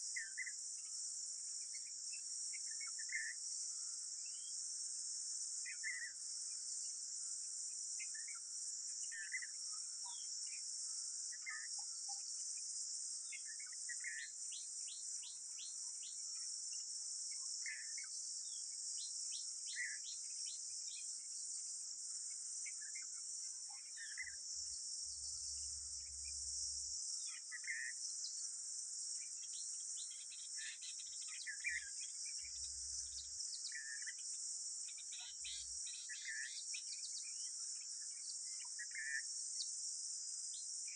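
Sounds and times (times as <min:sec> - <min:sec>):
high-pitched insect drone: 0:00.0 - 0:40.9
bird chirps: 0:34.9 - 0:37.5.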